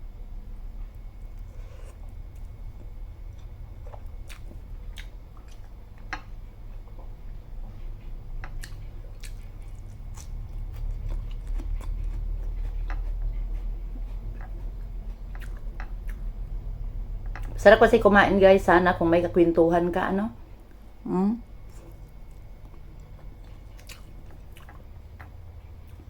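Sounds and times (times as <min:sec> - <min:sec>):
person chewing crisp food: 0:00.9 - 0:16.5, 0:21.6 - 0:26.0
low rumble: 0:09.6 - 0:23.3.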